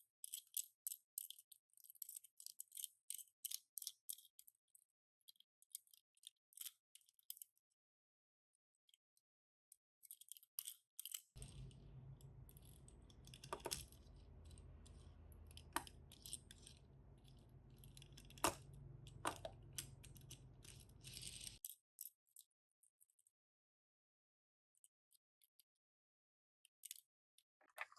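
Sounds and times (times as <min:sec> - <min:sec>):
toy cars and packaging clicking: 0:00.0 - 0:07.8, 0:08.7 - 0:23.3, 0:26.6 - 0:27.9
faint low hum: 0:11.4 - 0:21.6.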